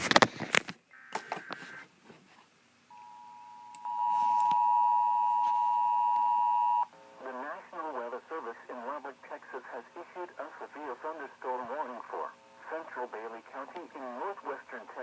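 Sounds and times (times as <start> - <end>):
two-tone alert signal: 2.9 - 6.9.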